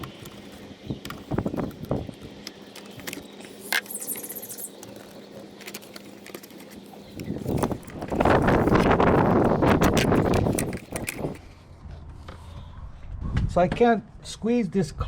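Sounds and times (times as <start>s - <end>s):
metal parts rattling and scraping: 0.0s - 11.5s.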